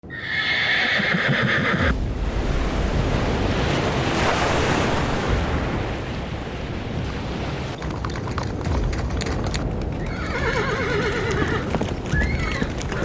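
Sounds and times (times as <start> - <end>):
steady rushing noise: 1.8 - 10.1, 11.2 - 13.0.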